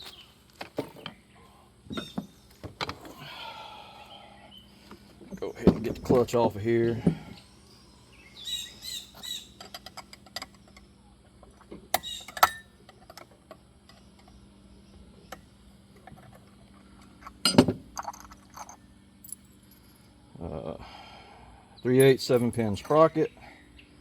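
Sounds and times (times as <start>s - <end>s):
metal tools clicking and clanking: 16.0s - 19.8s, 22.0s - 23.3s.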